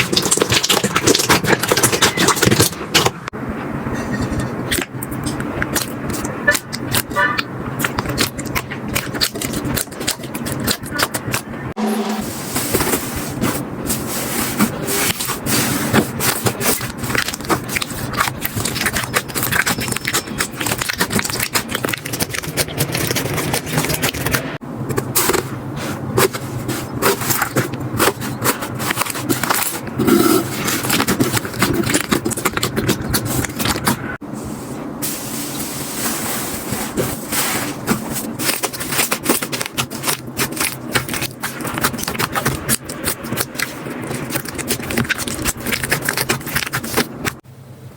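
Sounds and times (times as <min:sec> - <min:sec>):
slime crackling and popping: 0:00.0 - 0:02.8, 0:05.2 - 0:11.5, 0:16.3 - 0:24.4, 0:38.3 - 0:47.4.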